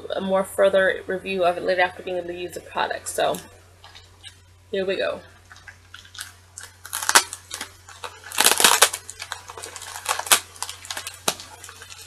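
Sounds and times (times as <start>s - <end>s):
envelope crinkling and snapping: 5.4s - 12.0s.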